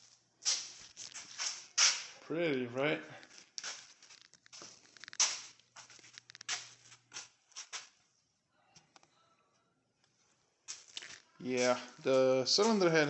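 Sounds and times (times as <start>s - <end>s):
handling rustles and knocks: 3.2s - 8.0s.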